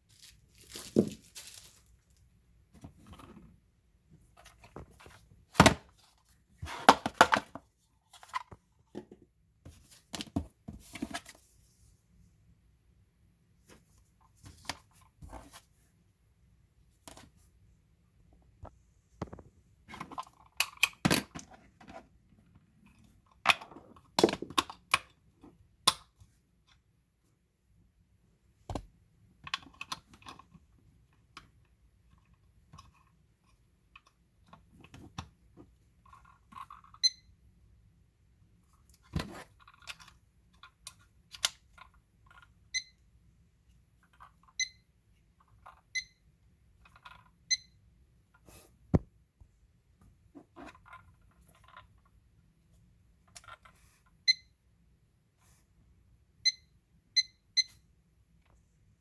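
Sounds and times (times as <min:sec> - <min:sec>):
packaging rustling: 0:00.1 - 0:02.1.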